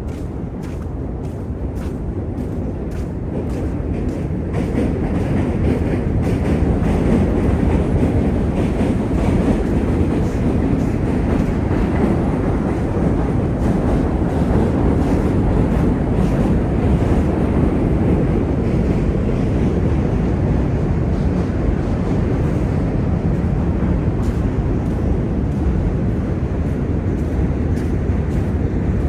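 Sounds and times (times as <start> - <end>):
wheels clacking over rail joints: 0.0 - 19.6
train rumbling past: 0.0 - 29.0.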